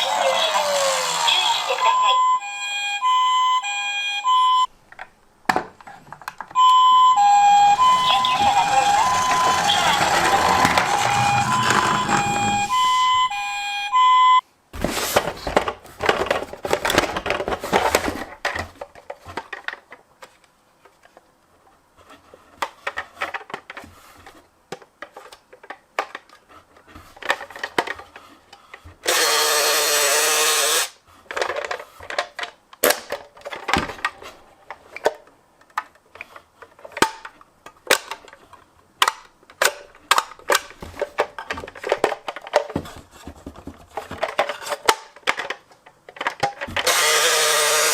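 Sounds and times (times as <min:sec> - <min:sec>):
toy electronic siren: 0:00.5 - 0:04.7, 0:06.6 - 0:14.4
loud steady sound: 0:07.5 - 0:13.6
plastic toy vehicles clicking and rattling: 0:07.8 - 0:13.2, 0:15.0 - 0:21.3, 0:22.2 - 0:29.3, 0:31.2 - 0:47.9.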